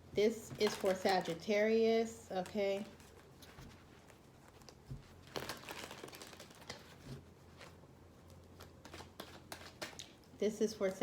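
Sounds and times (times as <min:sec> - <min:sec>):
cards rustling and clicking: 0:02.3 - 0:10.2.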